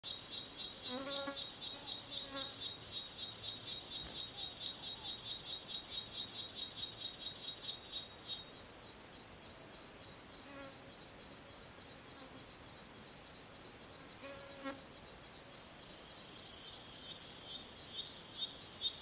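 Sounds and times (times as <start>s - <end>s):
cicada buzzing: 0.1s - 8.1s.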